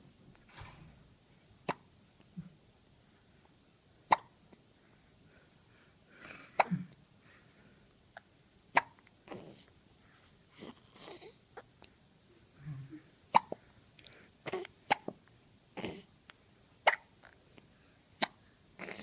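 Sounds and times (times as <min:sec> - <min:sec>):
baby hiccupping: 0:04.1 - 0:04.4, 0:08.8 - 0:09.6, 0:13.3 - 0:13.6, 0:14.4 - 0:15.2, 0:16.9 - 0:17.4, 0:18.2 - 0:19.0.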